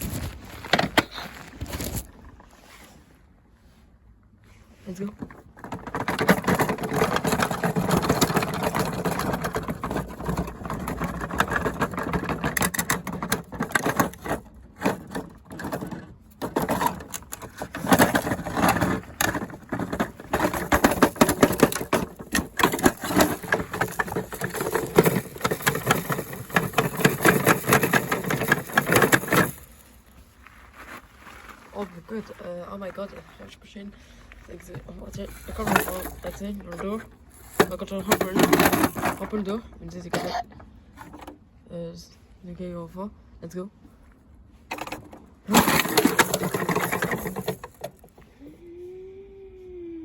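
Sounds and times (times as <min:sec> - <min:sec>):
washing machine clattering and banging: 0:05.6 - 0:29.5.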